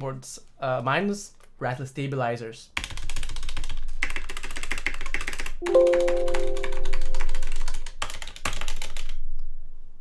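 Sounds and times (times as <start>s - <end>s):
mechanical keyboard clicking: 2.8s - 9.1s
steady held musical tone: 5.6s - 7.8s.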